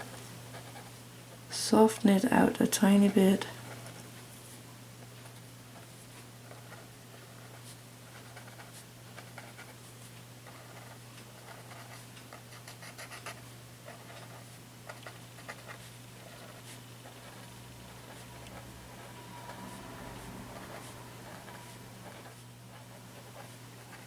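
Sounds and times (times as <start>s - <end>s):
steady low hum: 0.0s - 24.0s
scratchy rubbing on paper: 10.5s - 24.0s.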